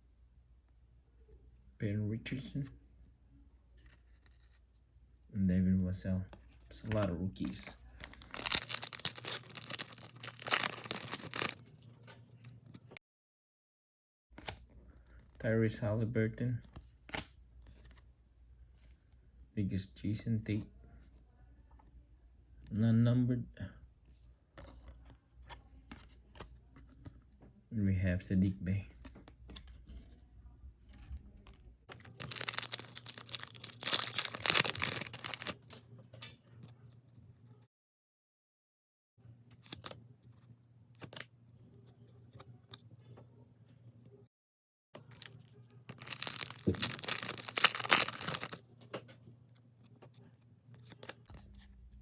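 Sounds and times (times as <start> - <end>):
foil wrapper crinkling and tearing: 7.5 - 12.2, 31.9 - 35.8, 45.1 - 48.6.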